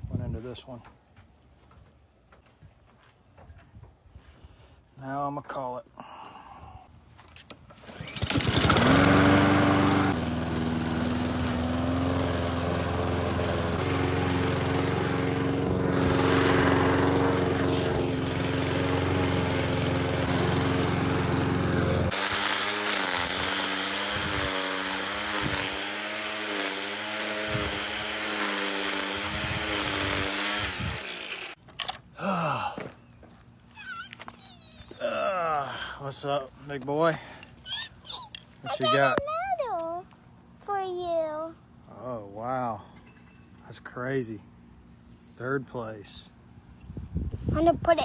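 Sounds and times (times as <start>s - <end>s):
small engine running: 7.8s - 31.6s.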